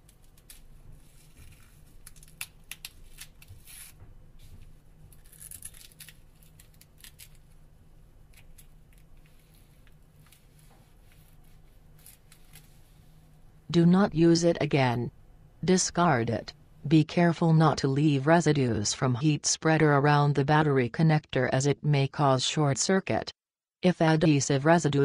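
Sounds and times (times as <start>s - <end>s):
adhesive sheet crinkling and tearing: 0.0s - 7.6s, 8.3s - 12.8s.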